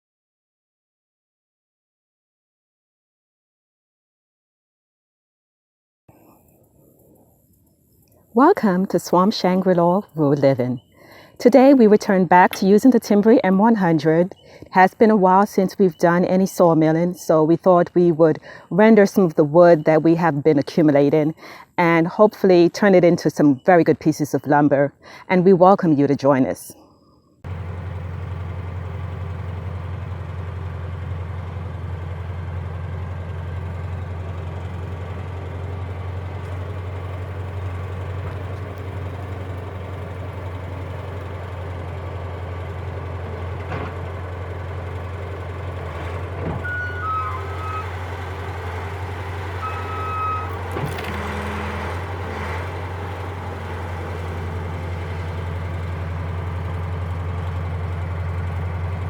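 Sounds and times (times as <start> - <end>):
engine idling: 27.4 - 59.0
short high beeps: 49.6 - 50.6.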